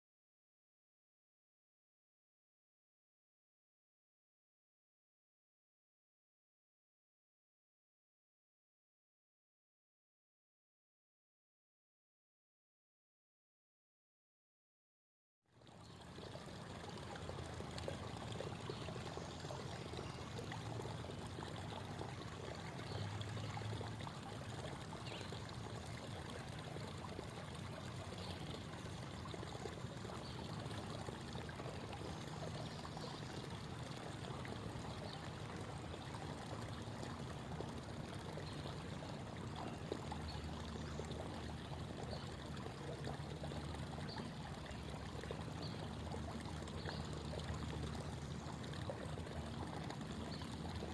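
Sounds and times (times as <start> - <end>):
creek babbling: 15.6 - 50.9.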